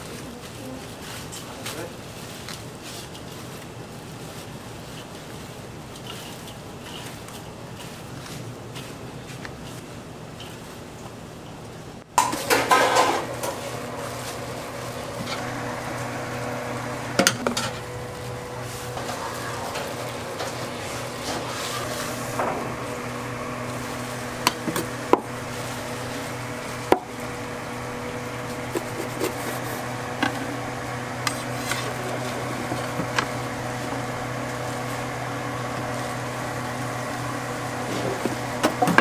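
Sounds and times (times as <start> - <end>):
metal utensils clanking on pans: 12.2 - 13.7, 17.2 - 17.9
steady hum: 12.2 - 39.0.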